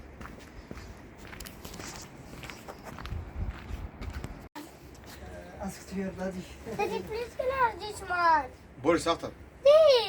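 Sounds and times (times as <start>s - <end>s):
footsteps walking: 0.0s - 5.3s.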